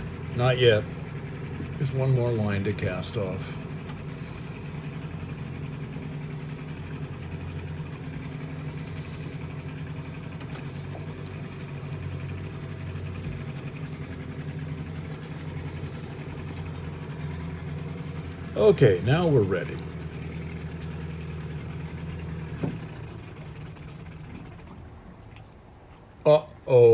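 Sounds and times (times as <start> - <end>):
boat motor idling: 0.0 - 26.9.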